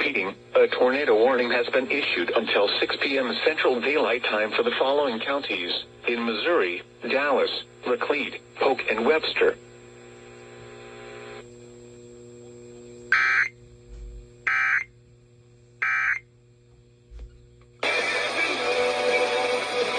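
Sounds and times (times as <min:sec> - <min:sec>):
harsh digital data bursts: 0:13.1 - 0:13.6, 0:14.5 - 0:14.9, 0:15.8 - 0:16.2.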